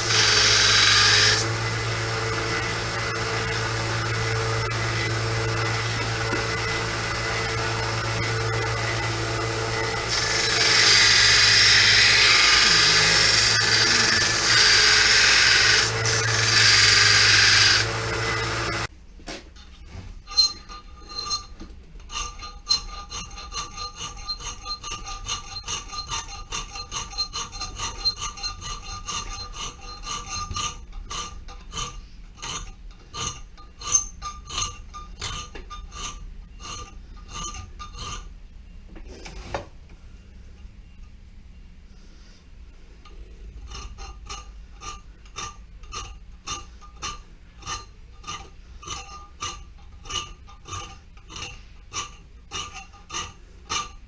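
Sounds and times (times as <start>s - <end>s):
electric sander grinding steel: 0.0s - 18.9s
hand filing steel: 0.0s - 18.9s, 20.3s - 38.3s, 43.1s - 54.0s.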